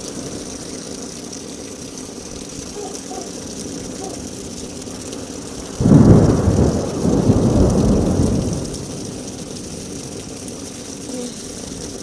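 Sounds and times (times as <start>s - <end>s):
thunder crack and rumble: 5.6s - 10.2s.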